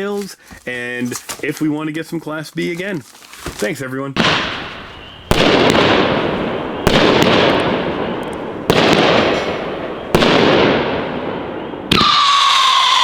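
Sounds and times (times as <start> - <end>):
firework launch thumps: 3.5 - 8.0, 8.7 - 11.1
firework howling whistle: 4.5 - 13.0.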